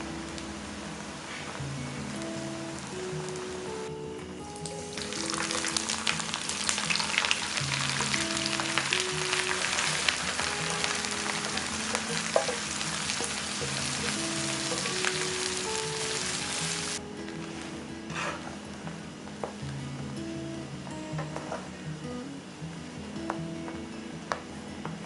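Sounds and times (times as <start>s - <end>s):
background music: 0.0s - 25.0s
food sizzling in hot oil: 4.6s - 18.2s.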